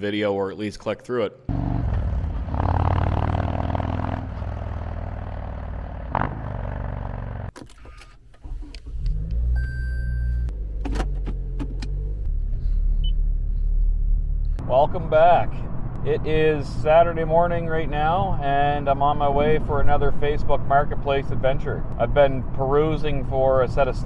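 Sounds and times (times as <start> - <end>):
motorcycle engine running: 1.5 - 7.5
car engine starting and running: 1.5 - 18.9.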